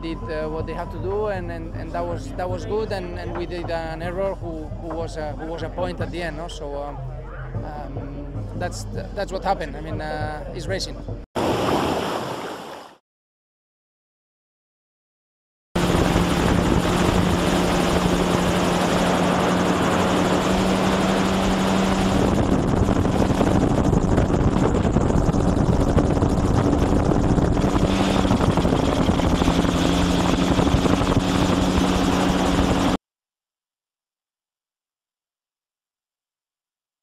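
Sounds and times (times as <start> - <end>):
engine drone with low hum: 0.0 - 11.2, 15.8 - 33.0.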